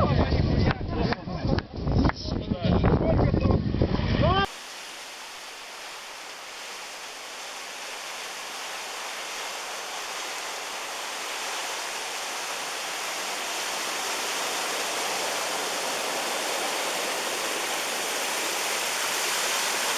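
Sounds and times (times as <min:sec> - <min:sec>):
steady rushing noise: 0:04.4 - 0:19.9.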